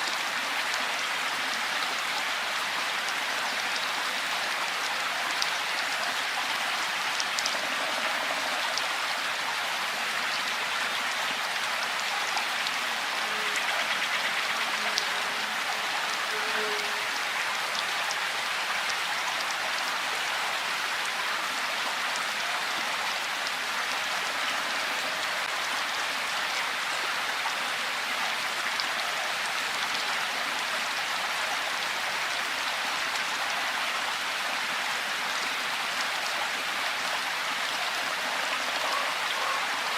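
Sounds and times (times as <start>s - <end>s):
steady rainfall hiss: 0.0s - 39.9s.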